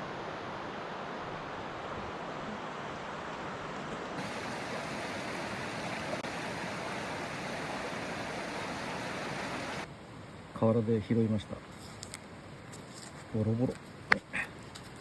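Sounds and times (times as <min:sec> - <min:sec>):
flowing river water: 0:00.0 - 0:09.9.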